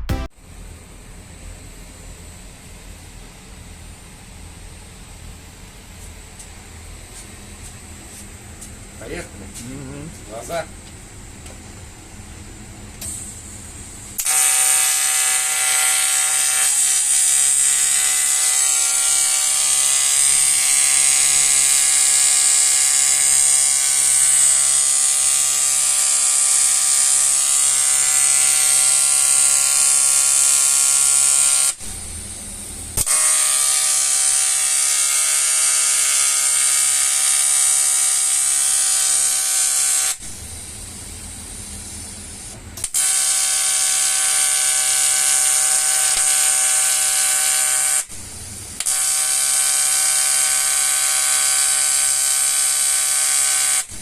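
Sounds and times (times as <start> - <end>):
welding arc buzzing and hissing: 13.0 - 54.0.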